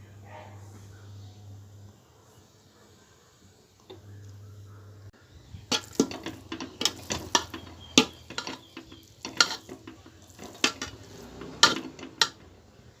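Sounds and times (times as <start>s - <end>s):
metal utensil scraping a pot: 5.6s - 12.7s.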